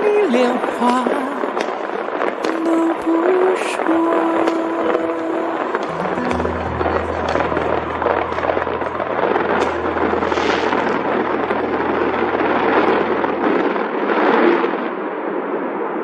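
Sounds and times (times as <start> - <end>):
low steady hum: 4.8 - 14.0.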